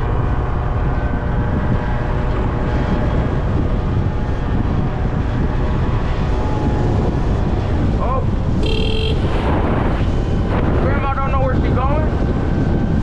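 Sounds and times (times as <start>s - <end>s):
wind buffeting microphone: 0.0s - 13.0s
scooter engine running: 8.6s - 9.4s.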